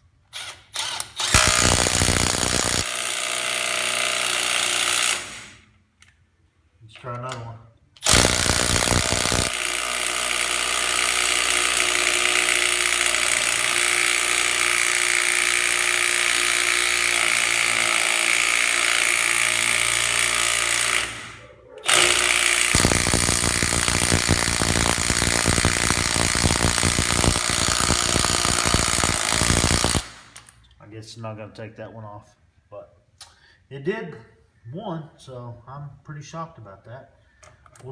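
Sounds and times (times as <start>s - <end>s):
impact wrench hammering: 1.2s - 5.5s, 8.0s - 21.3s, 21.9s - 30.5s.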